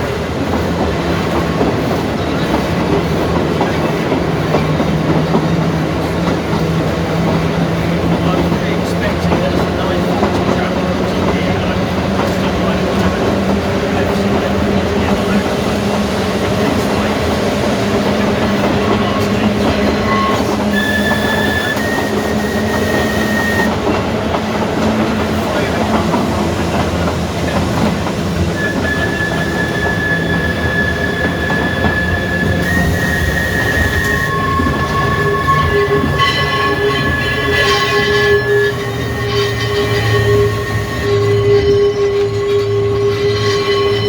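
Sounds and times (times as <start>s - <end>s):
tramcar rumbling along track: 0.0s - 44.0s
high wheel squeals: 8.1s - 23.8s, 25.4s - 44.0s
high steady whining tones: 18.0s - 23.8s, 27.8s - 44.0s.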